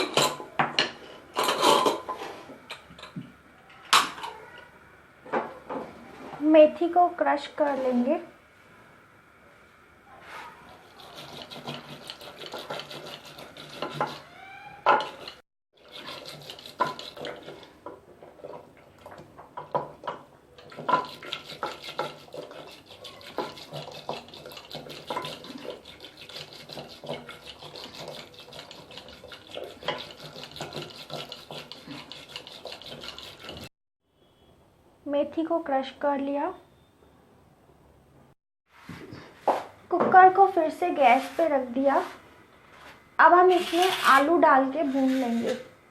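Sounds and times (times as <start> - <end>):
utensil mashing in a pot: 10.7 - 33.7.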